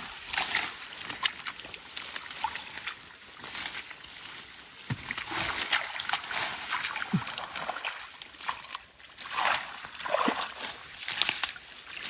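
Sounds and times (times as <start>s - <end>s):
rustling grass: 0.0s - 8.5s.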